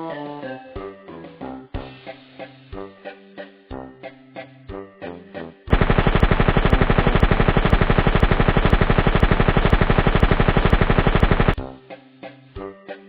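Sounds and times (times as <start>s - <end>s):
machine-gun fire: 5.7s - 11.6s.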